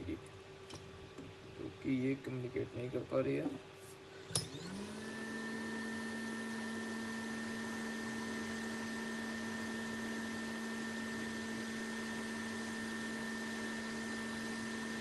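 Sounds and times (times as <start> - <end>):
hot air station blowing: 4.2 - 15.0.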